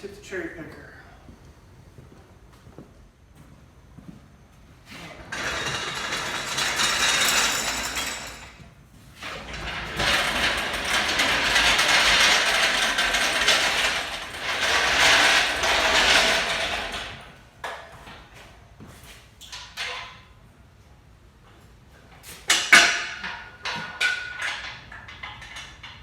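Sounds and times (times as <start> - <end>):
engine hoist casters rattling: 5.0 - 18.3.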